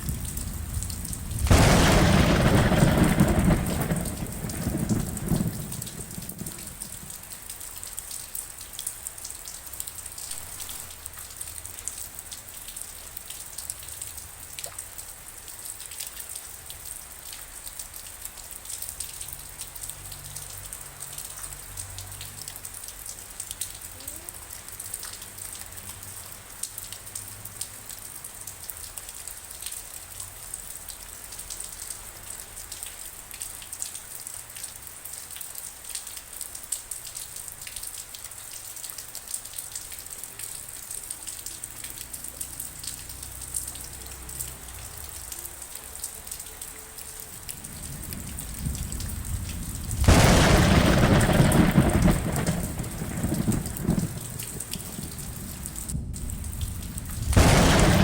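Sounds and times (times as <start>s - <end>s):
thunder rumbling: 0.0s - 7.4s, 47.4s - 58.0s
raindrops tapping on hard surface: 0.0s - 15.0s, 15.7s - 28.1s, 47.4s - 58.0s.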